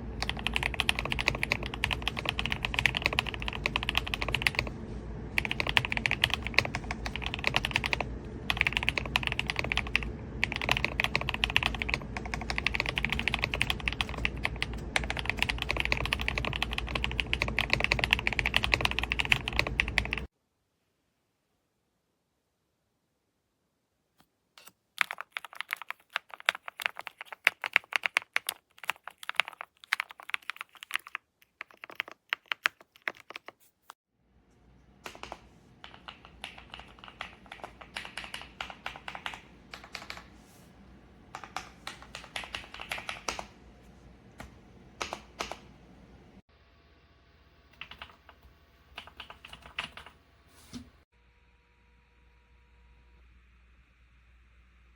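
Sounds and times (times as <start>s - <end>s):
low background hum: 0.0s - 20.3s, 22.5s - 54.9s
mechanical keyboard typing: 0.2s - 4.7s, 5.4s - 20.3s, 24.6s - 33.6s, 35.0s - 40.3s, 41.3s - 43.6s, 44.4s - 45.7s, 47.8s - 50.1s.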